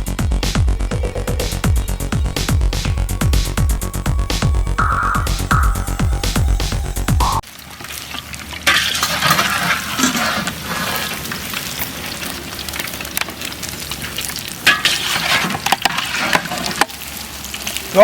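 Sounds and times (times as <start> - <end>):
fritters sizzling in hot oil: 7.4 - 18.0.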